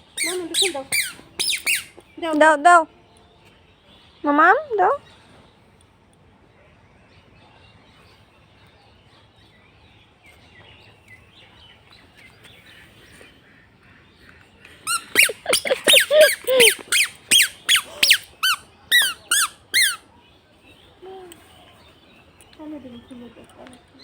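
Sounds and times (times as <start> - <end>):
bird squawking: 0.2 - 1.9, 14.8 - 20.0.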